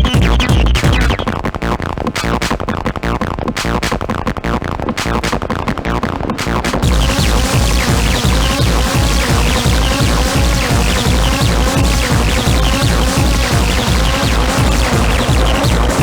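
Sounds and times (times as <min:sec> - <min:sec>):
pounding kick drum: 0:00.0 - 0:01.2, 0:06.4 - 0:16.0
electronic dance music: 0:00.0 - 0:16.0
falling synth sweeps: 0:06.8 - 0:16.0.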